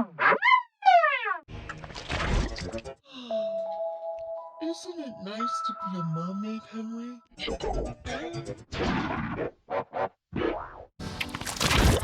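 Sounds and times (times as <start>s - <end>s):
distorted choppy voice bursts: 7.3s - 8.6s.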